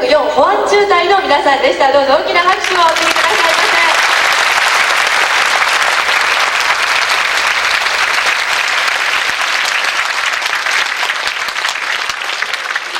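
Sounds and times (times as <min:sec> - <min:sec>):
audience applauding: 0:02.6 - 0:12.9.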